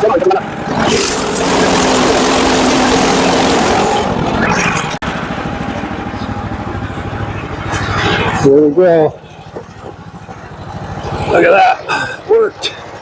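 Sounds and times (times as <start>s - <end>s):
gas engine running: 0.5s - 7.2s
band blade cutting log: 0.8s - 4.3s.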